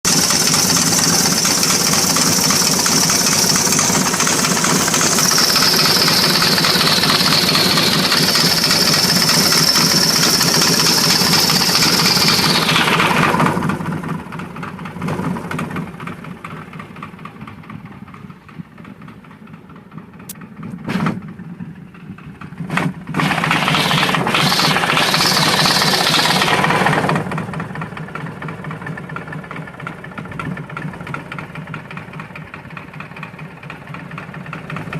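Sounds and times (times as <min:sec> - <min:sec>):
engine knocking: 0:00.0 - 0:34.9
motorcycle engine idling: 0:00.0 - 0:34.9
motorcycle engine revving with whine: 0:00.1 - 0:15.8, 0:22.6 - 0:27.6
sharp clicks: 0:23.2 - 0:27.1.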